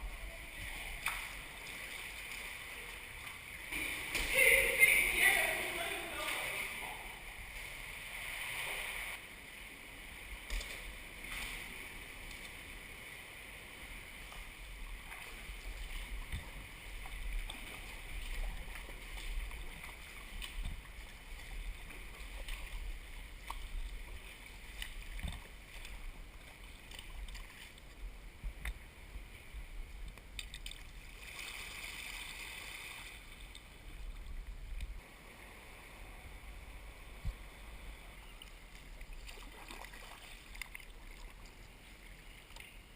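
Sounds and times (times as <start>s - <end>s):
water swishing around kayak: 0.0s - 42.9s
small paddle splashes: 14.2s - 27.9s, 38.4s - 41.6s.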